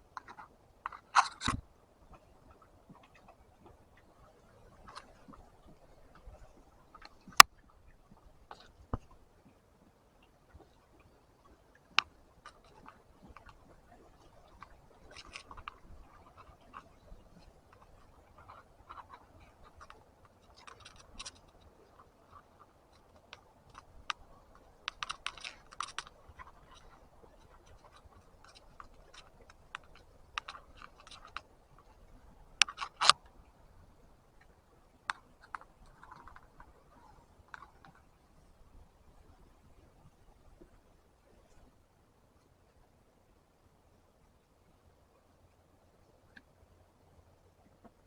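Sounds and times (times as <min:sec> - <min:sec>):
fishing tackle clicking and scraping: 0:00.1 - 0:07.7, 0:11.7 - 0:38.5.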